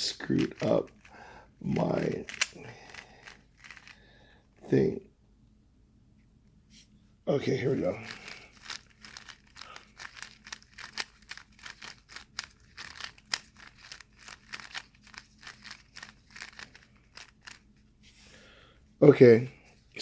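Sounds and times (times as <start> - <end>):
speed cube clicking: 2.2 - 4.0, 8.0 - 17.7.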